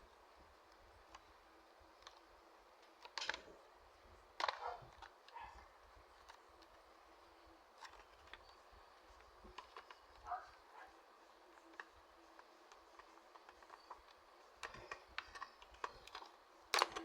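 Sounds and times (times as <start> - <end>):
packaging rustling and clicking: 2.0 - 3.6, 4.4 - 6.8, 7.8 - 10.9, 11.5 - 17.0.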